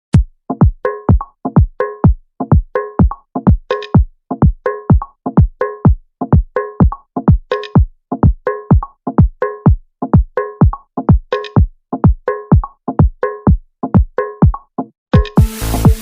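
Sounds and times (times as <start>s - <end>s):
deep kick drum: 0.2s - 14.6s, 15.2s - 16.0s
electronic dance music: 15.2s - 16.0s
synth chord stabs: 15.4s - 16.0s.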